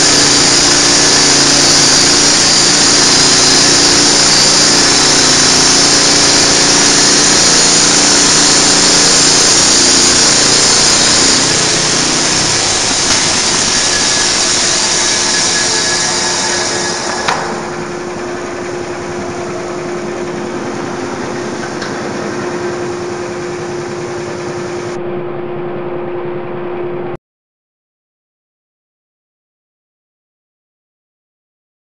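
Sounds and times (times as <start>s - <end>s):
band sawmill sawing log: 0.0s - 25.0s.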